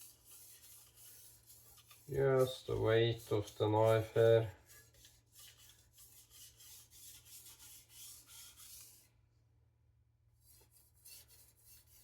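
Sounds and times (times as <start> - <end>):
knife scraping on whetstone: 0.0 - 9.0.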